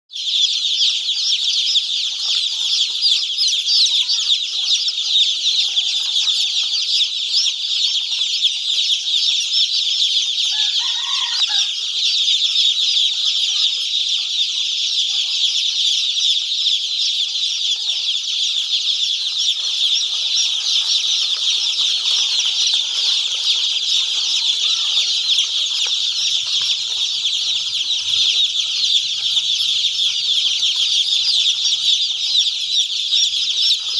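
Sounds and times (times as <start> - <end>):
chicks peeping: 0.1 - 33.9.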